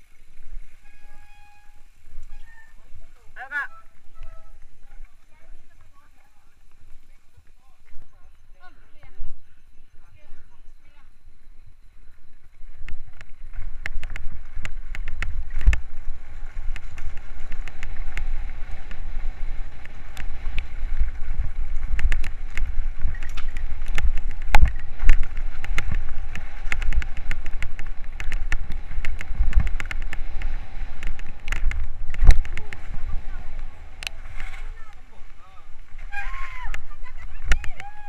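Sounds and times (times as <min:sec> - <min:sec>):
wind buffeting microphone: 0:01.7 - 0:38.0
bike rattling over bumps: 0:10.2 - 0:38.0.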